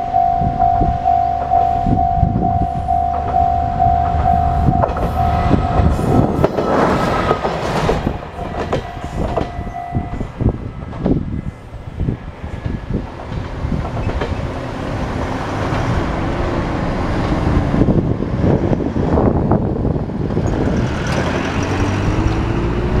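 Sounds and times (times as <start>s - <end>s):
train running noise: 0.0s - 23.0s
wheels clicking over rail joints: 2.9s - 10.2s, 12.6s - 16.0s, 20.3s - 23.0s.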